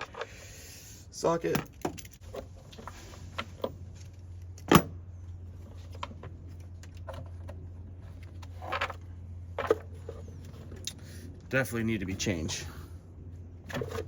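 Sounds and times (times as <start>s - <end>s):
steady low hum: 0.0s - 14.0s
metal tools clicking and knocking: 1.5s - 2.2s.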